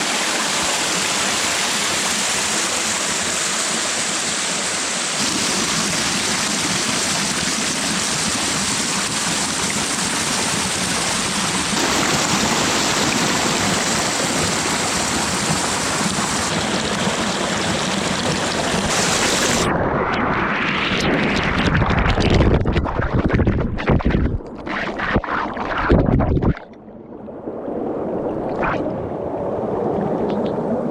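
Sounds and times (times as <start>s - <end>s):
rushing river water: 0.0s - 19.7s
wind buffeting microphone: 19.6s - 24.4s, 25.0s - 26.6s.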